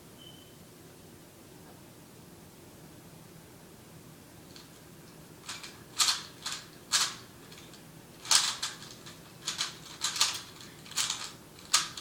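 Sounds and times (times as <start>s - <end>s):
puzzle cube plastic clacks: 5.4s - 12.0s.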